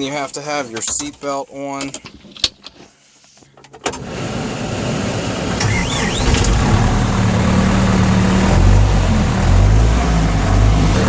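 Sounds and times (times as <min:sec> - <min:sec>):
diesel engine starting: 0:03.9 - 0:11.0.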